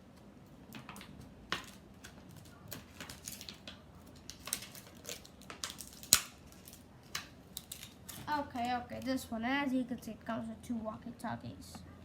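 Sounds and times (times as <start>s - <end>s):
plastic snapping: 0.7s - 8.3s
scissors cutting plastic packaging: 1.5s - 9.1s.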